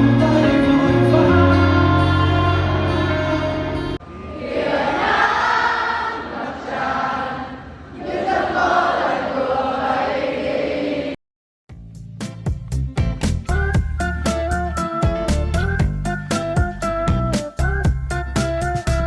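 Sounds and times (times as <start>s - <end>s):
choir-like voices: 0.0s - 11.2s.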